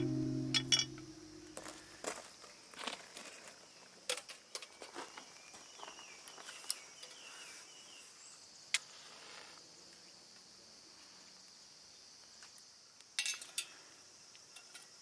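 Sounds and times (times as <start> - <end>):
wavy chirps: 0.0 - 1.6.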